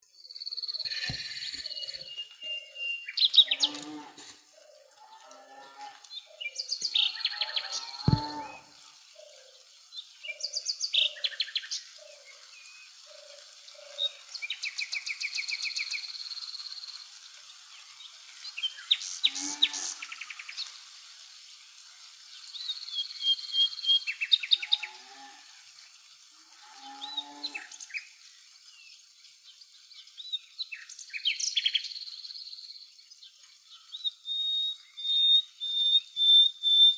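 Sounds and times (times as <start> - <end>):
birds chirping and trilling: 0.6 - 8.6.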